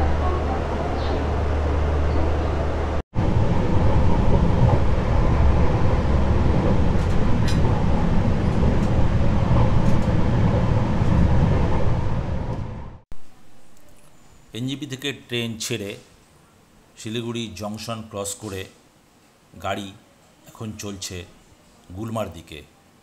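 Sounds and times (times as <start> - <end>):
train wheels rumbling on rails: 0.0 - 13.0.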